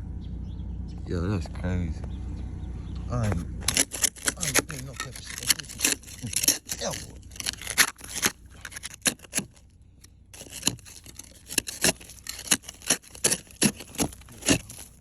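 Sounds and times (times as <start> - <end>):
ice crunching and cracking: 3.2 - 15.0.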